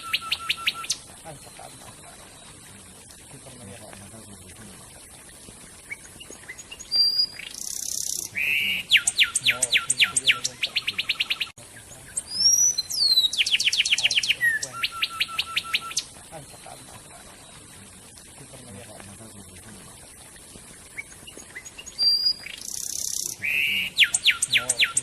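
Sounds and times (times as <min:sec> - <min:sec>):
songbird whistling downward notes: 0:00.0 - 0:01.8, 0:12.1 - 0:16.8, 0:21.0 - 0:25.0.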